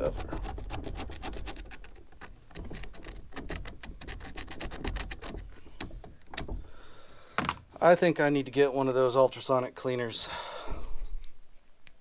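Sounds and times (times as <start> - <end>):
scraping on metal: 0.0 - 6.1.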